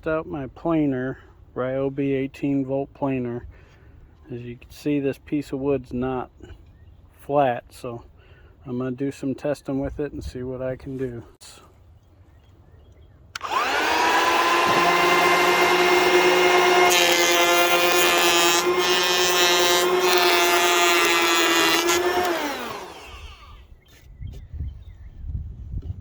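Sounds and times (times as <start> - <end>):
electric planer motor whining: 13.4 - 23.6
planer cutting wood: 13.4 - 23.6.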